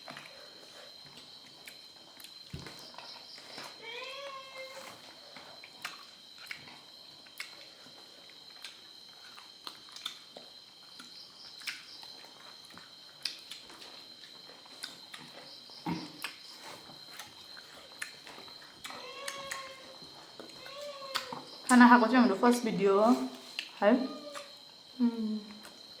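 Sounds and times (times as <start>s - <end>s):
person chewing food: 0.0s - 3.8s, 5.3s - 21.6s.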